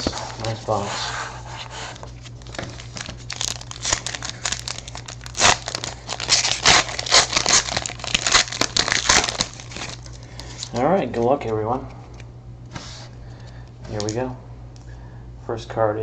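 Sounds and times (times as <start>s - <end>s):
plastic wrapping crinkling and tearing: 0.0s - 0.8s, 1.9s - 10.8s
steady low hum: 0.0s - 16.0s.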